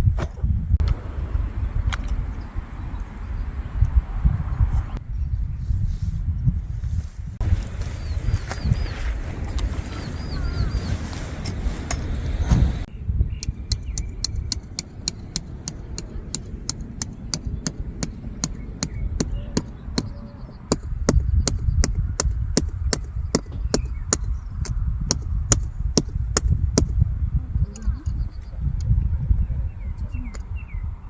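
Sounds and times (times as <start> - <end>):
wind rumbling on microphone: 0.0 - 31.0
rapid hammer strikes: 13.4 - 26.9.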